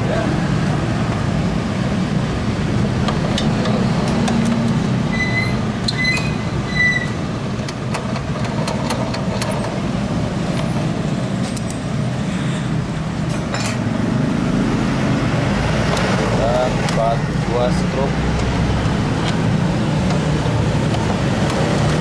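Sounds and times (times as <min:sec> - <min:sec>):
short high squeaks: 0:05.1 - 0:07.2
wrench clicking on metal bolts: 0:07.6 - 0:09.8.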